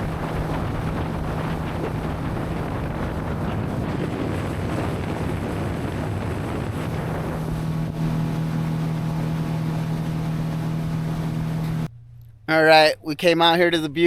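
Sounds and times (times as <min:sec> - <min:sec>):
wind noise on microphone: 0:00.0 - 0:11.9
motorboat engine hum: 0:00.0 - 0:12.5.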